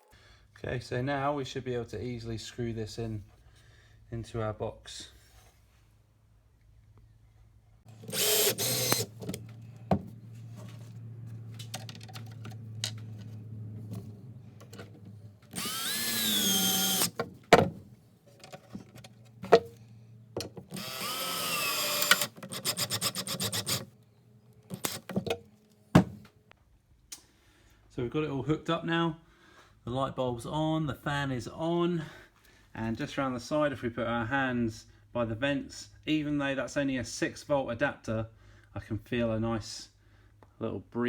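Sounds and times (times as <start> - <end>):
cordless drill motor whine: 7.9 - 10.0, 15.5 - 17.2, 20.7 - 23.9
handling knocks: 9.0 - 10.8, 17.0 - 19.8, 24.7 - 26.3.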